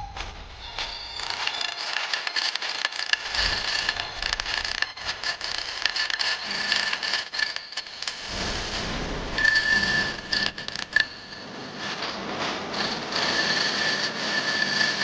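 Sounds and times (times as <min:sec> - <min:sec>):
faint high whine: 0:07.9 - 0:11.8.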